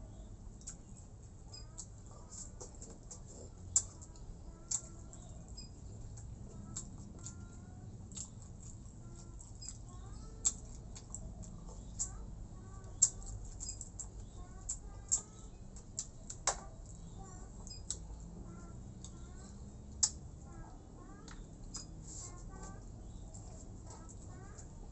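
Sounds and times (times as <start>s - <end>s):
mouth smacks and chewing: 5.9s - 12.2s, 12.8s - 18.4s, 19.9s - 20.3s.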